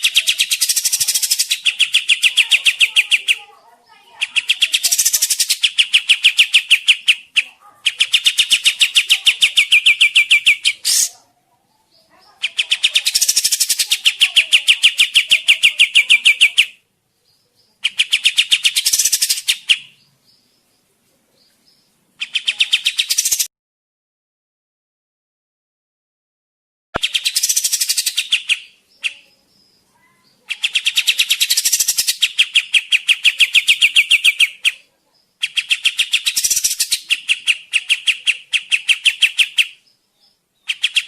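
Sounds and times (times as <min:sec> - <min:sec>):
songbird chattering trills: 0:00.0 - 0:23.5, 0:27.0 - 0:41.0.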